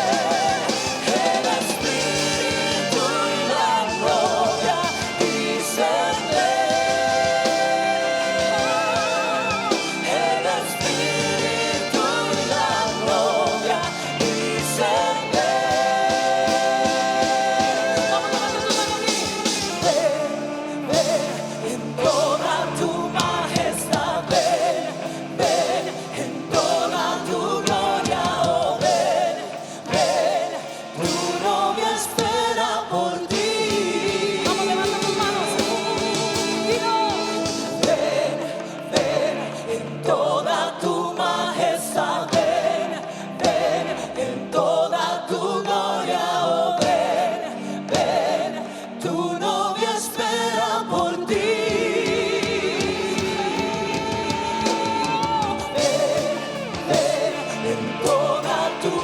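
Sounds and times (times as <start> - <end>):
band playing worship music: 0.0 - 59.0
voices singing together: 0.0 - 59.0.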